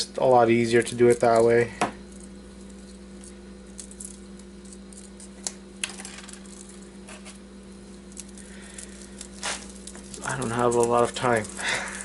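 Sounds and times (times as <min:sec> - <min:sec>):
steady low hum: 0:00.0 - 0:12.0
metallic clicks of unwinding wire: 0:08.0 - 0:12.0.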